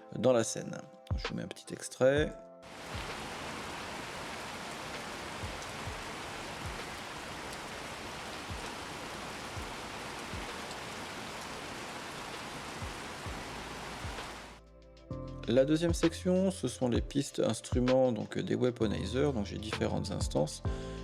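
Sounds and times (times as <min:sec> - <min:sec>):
rain falling: 0:02.7 - 0:14.6.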